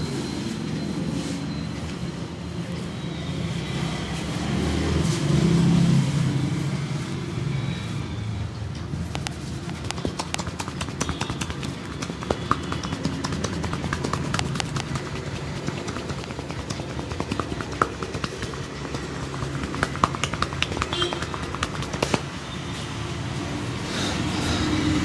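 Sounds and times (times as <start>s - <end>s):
street traffic rumble: 0.0s - 25.0s
hands tapping and clapping: 9.2s - 22.3s.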